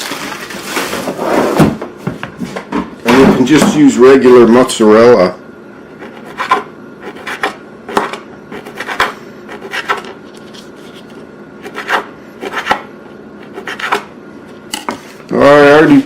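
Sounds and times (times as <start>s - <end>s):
knife slicing on cutting board: 11.6s - 14.1s.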